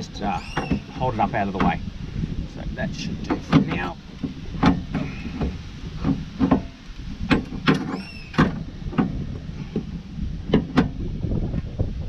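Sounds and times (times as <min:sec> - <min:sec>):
brake parts knocking and clunking: 0:00.0 - 0:01.9, 0:02.9 - 0:11.8
short metallic squeak: 0:00.4 - 0:01.0, 0:07.7 - 0:08.5.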